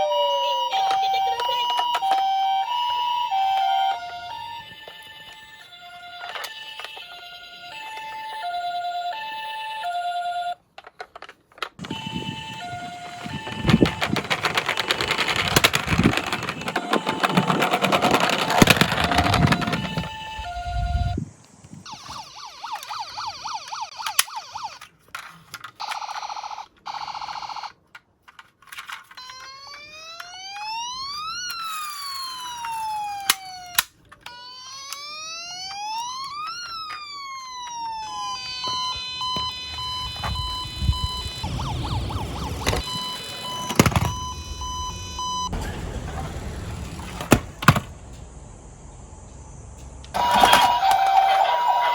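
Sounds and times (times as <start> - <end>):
toy siren wailing: 0.0 - 10.6, 11.8 - 21.2, 21.9 - 24.9, 25.8 - 27.8, 29.0 - 45.6, 50.1 - 51.9
plastic clattering and rattling: 10.7 - 12.0, 13.0 - 20.2, 28.0 - 29.8
electronic beeping tones: 38.0 - 45.6.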